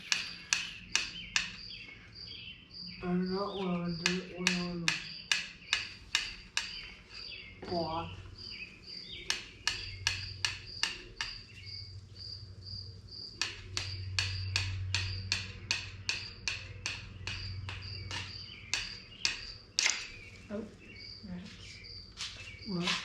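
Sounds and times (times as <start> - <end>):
hand tool tapping metal: 0.0 - 1.7, 3.6 - 7.7, 9.2 - 11.8, 13.3 - 20.3
crickets chirping: 0.0 - 23.0.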